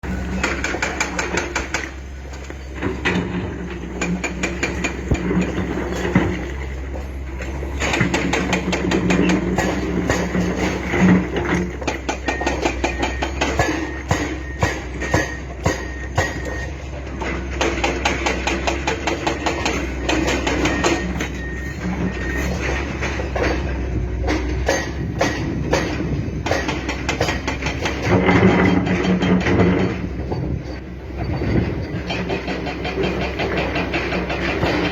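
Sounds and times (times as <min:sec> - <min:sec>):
excavator engine hum: 0:00.0 - 0:34.9
metal knocking and clanking: 0:00.0 - 0:34.9.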